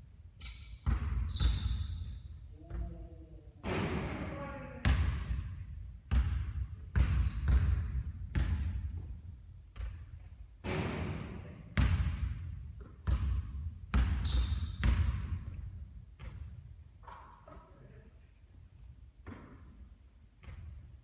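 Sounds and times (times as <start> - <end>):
basketball bouncing on a court: 0.8 - 3.0, 3.6 - 17.2, 20.4 - 20.9.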